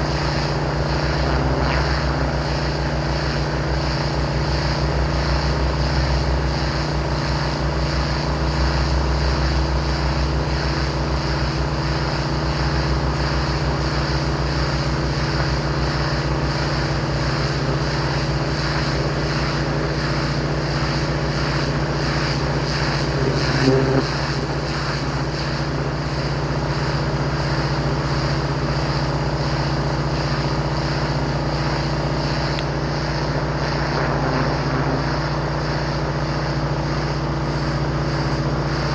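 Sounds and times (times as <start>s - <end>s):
pressure washer engine drone: 0.0s - 38.9s
spray hissing: 12.2s - 38.9s.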